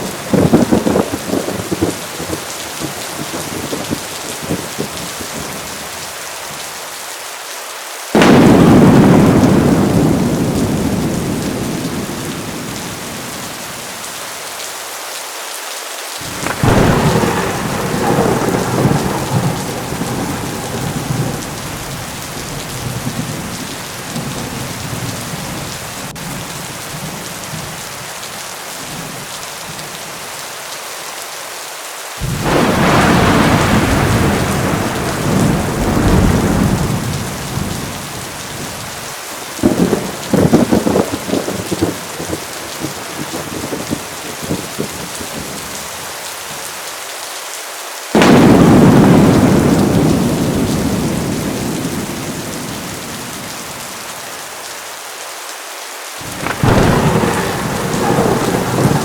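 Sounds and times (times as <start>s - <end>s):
thunder crack and rumble: 0.0s - 5.6s, 8.2s - 13.7s, 16.2s - 27.7s, 32.2s - 45.8s, 48.2s - 53.9s, 56.2s - 59.0s
heavy rain falling: 0.0s - 59.0s.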